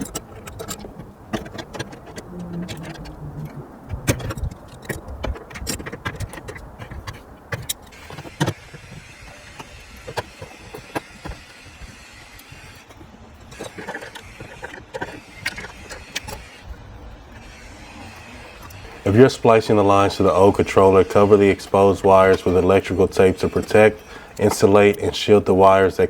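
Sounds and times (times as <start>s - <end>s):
low background noise: 0.0s - 26.0s.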